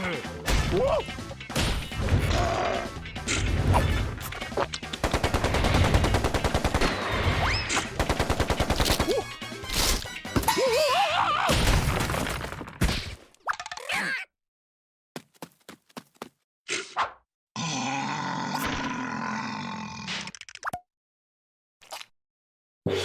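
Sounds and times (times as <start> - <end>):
squeaky cartoon voice: 13.6 - 14.3.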